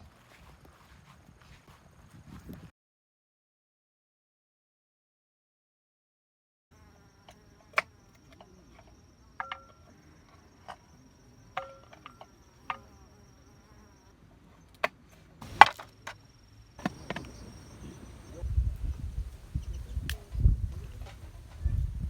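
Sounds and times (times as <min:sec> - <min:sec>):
insect high-pitched trill: 0:06.8 - 0:14.2, 0:15.4 - 0:20.6.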